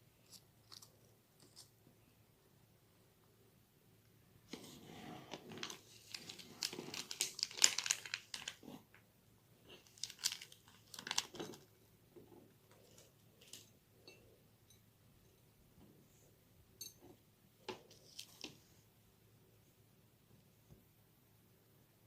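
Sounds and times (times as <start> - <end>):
plastic packaging crinkling: 5.4 - 8.9, 9.7 - 11.7.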